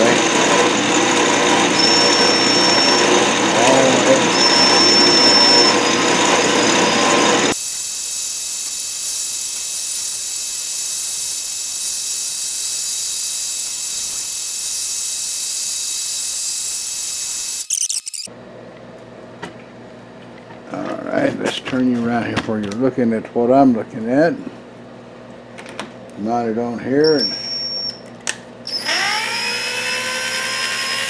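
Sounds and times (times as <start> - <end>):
lathe cutting wood: 0.0 - 7.6, 28.7 - 31.0
lathe high-pitched squeal: 0.0 - 18.3, 27.0 - 27.8, 28.7 - 31.0.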